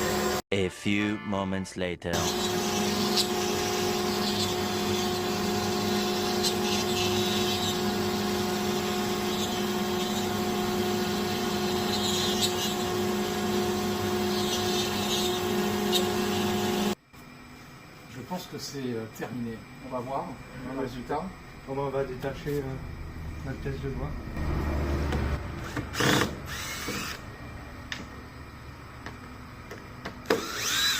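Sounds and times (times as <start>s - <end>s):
router milling wood: 2.2s - 17.0s, 25.6s - 27.2s, 30.2s - 30.9s.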